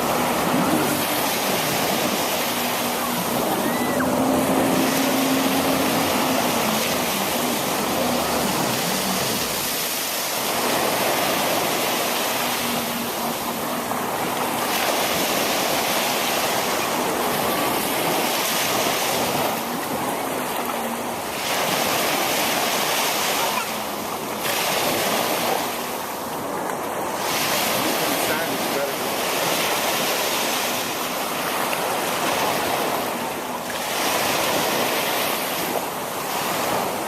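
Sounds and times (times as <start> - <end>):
wind on microphone: 0.0 - 23.4
ocean surf washing in: 0.0 - 37.0.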